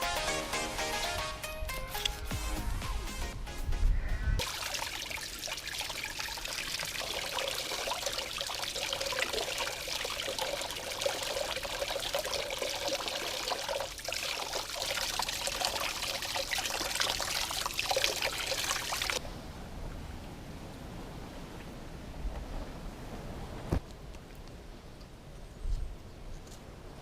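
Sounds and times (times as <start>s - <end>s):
water pouring in a trickle: 4.4s - 19.2s.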